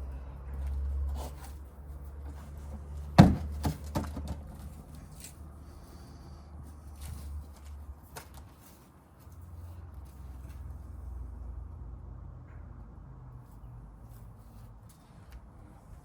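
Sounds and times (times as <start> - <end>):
sharp knocks: 3.2 - 4.5.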